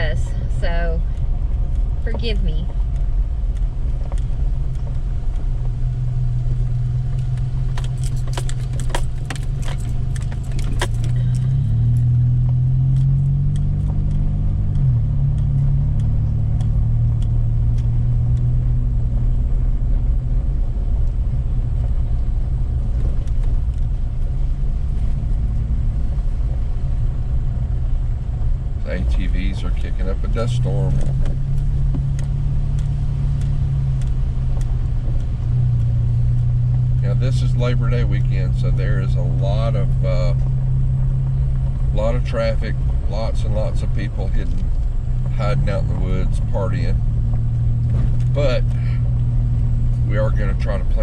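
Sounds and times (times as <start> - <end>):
truck engine and tyre rumble: 0.0 - 51.0
sharp rattling clicks: 0.6 - 19.4.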